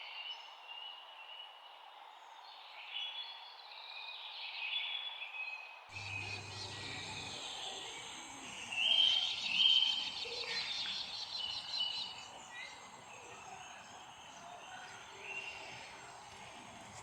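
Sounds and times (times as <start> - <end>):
background hiss: 6.0 - 17.0
songbirds chirping and singing: 6.0 - 17.0.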